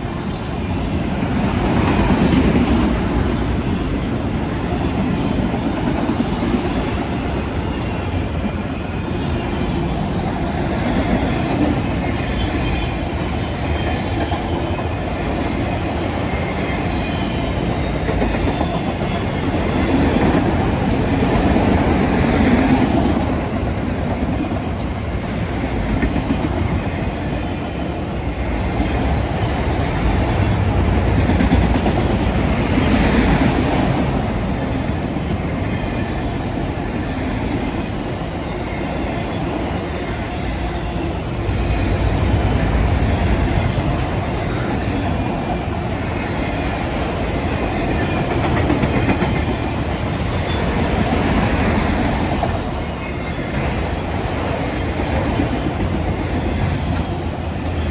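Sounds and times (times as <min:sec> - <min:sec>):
freight train cars rumbling and rattling: 0:00.0 - 0:57.9.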